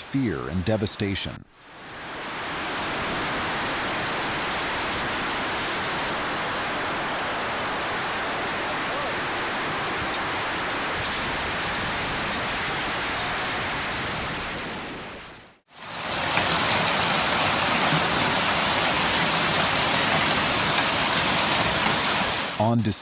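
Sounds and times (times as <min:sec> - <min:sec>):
wind: 0:00.0 - 0:23.0
heavy rain and hail: 0:15.7 - 0:23.0.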